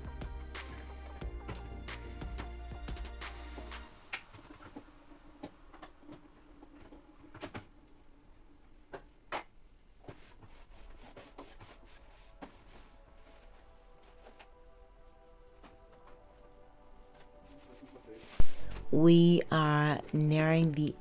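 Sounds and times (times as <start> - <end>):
background music: 0.0 - 5.4, 11.6 - 21.0.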